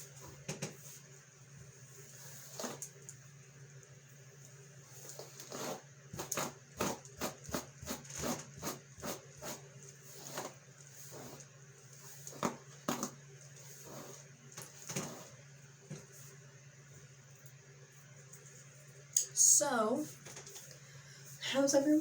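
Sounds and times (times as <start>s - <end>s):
hairbrush strokes through hair: 9.4s - 12.4s, 13.6s - 14.3s.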